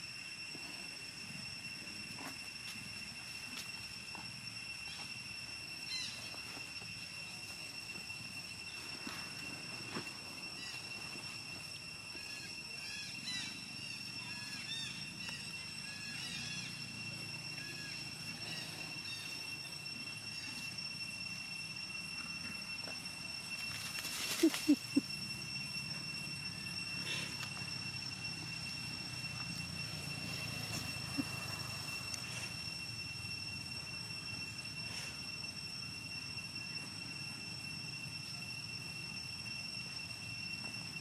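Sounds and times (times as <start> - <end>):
high-pitched whine: 0.0 - 41.0
squeaky chirps: 24.0 - 25.7.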